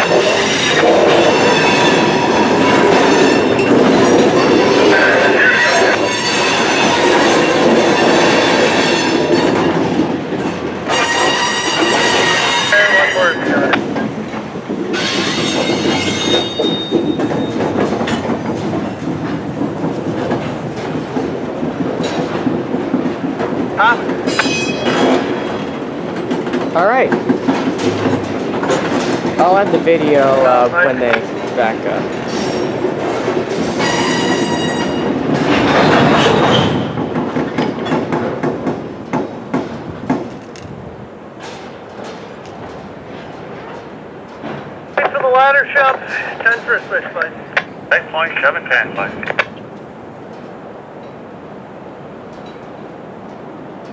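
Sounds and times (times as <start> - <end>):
high wheel squeal: 0.0 - 9.7, 10.9 - 13.6, 15.0 - 17.6, 33.8 - 35.1
freight train cars rolling: 0.0 - 53.9
wheels clicking over rail joints: 13.6 - 45.1, 49.3 - 53.9.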